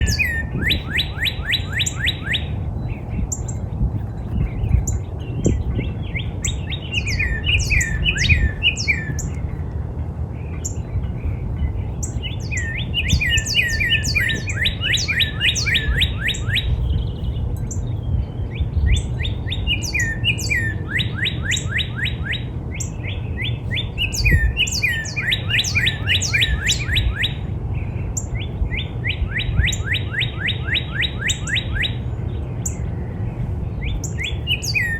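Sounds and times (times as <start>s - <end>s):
cardinal singing whistles: 12.5s - 16.8s, 23.8s - 27.4s, 34.2s - 34.9s.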